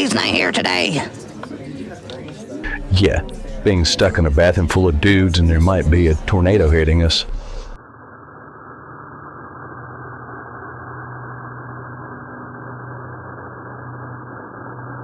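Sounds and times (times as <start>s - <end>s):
constant low hum: 2.6s - 7.8s
muffled tornado rumble: 2.6s - 7.8s.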